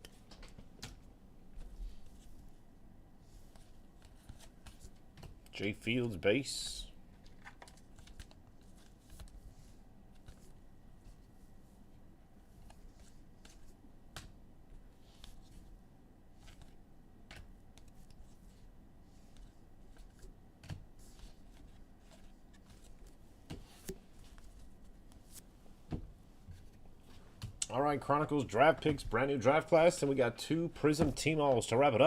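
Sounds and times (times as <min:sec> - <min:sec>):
trading cards rustling and clicking: 0:07.2 - 0:09.5, 0:19.2 - 0:25.5.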